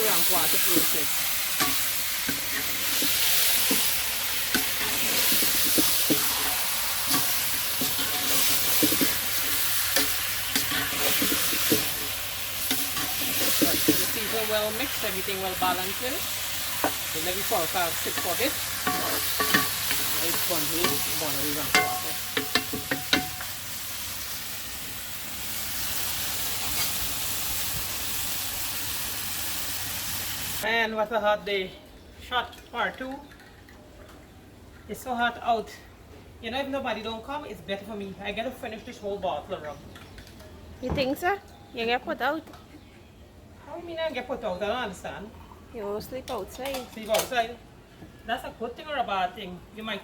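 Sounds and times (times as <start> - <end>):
meat sizzling in hot oil: 0.0 - 30.7
spoon scraping and knocking pot: 1.6 - 14.2, 18.0 - 23.5
spoon knocking on metal pot: 18.1 - 23.5.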